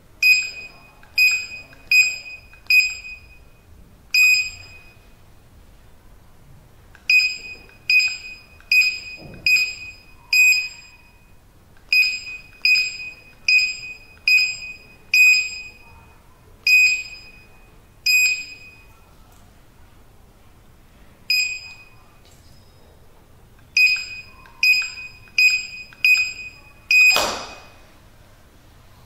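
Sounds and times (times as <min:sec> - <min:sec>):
keypad beeps: 0:00.2 - 0:03.6, 0:04.2 - 0:05.1, 0:07.1 - 0:16.0, 0:16.7 - 0:19.0, 0:21.3 - 0:22.8, 0:23.6 - 0:27.8.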